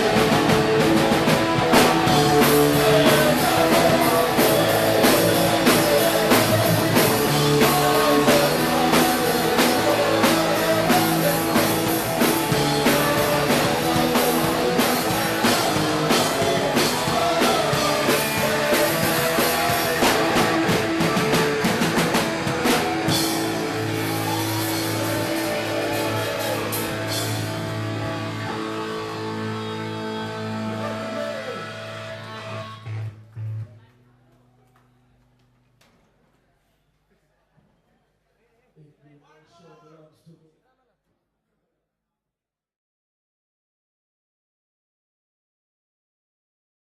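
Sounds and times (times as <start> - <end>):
punk rock band playing live: 0.0 - 33.7.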